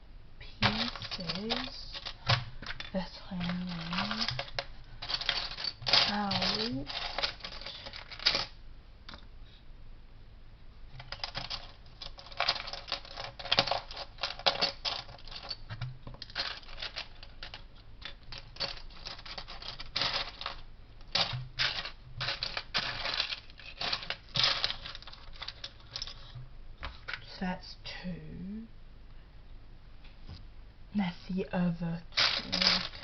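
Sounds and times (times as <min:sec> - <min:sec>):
plastic pieces clicking and clattering: 0:00.6 - 0:09.2, 0:11.0 - 0:26.4, 0:32.1 - 0:33.0.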